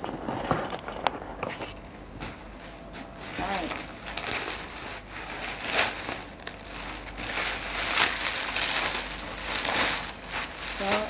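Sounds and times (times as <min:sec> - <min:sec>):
packaging torn open crinkling: 0:03.4 - 0:11.0.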